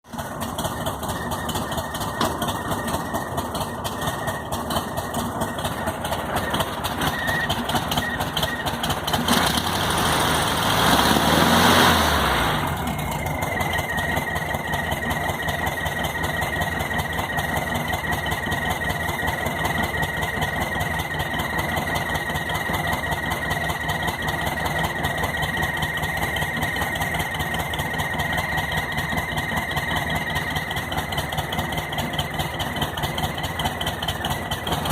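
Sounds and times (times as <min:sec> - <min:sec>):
car engine idling and revving: 0:00.0 - 0:34.9
high-pitched whistle: 0:00.7 - 0:08.8.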